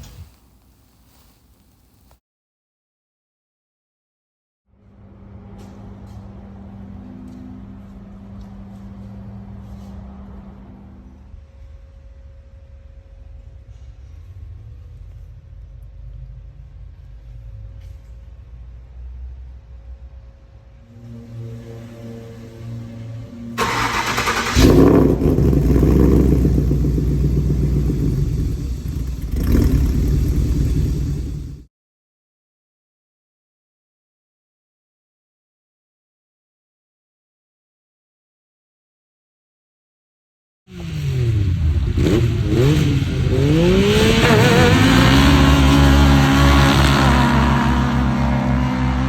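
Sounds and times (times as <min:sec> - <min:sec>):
car engine running and revving: 0:05.0 - 0:11.6, 0:23.6 - 0:31.7, 0:40.7 - 0:49.0.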